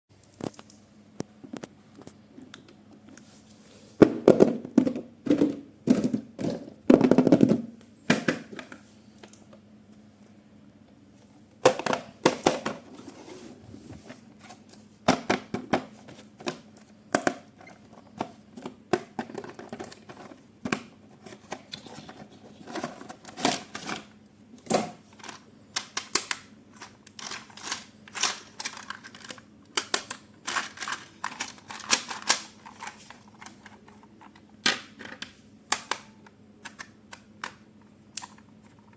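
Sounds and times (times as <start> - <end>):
hands handling plastic packaging: 24.9 - 34.4.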